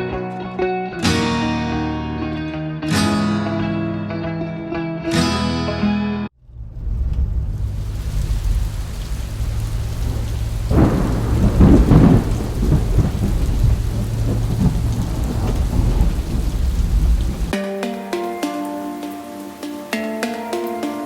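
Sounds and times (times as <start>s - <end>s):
thunder rumbling: 6.4s - 17.6s
heavy rain hissing: 6.7s - 21.0s.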